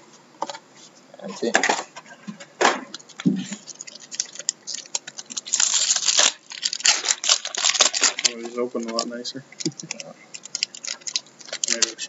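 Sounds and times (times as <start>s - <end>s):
wrappers tearing and crinkling: 2.9s - 12.0s
cards clicking while handled: 7.8s - 12.0s.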